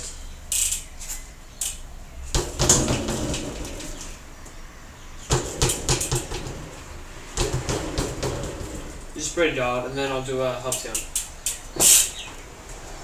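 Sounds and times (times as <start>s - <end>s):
bike parts knocking: 0.0s - 12.5s
bike dropped onto ground: 2.3s - 4.2s.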